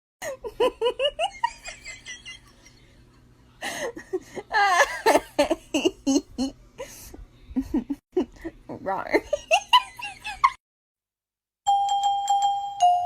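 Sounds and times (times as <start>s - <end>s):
person laughing: 0.2s - 2.9s, 3.6s - 8.6s.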